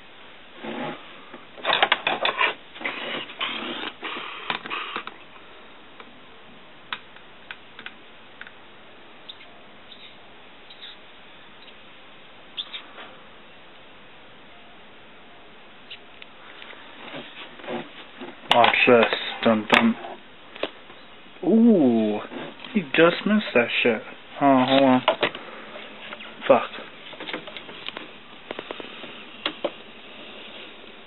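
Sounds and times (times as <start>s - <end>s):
rustling: 0.5s - 5.3s, 15.9s - 31.0s.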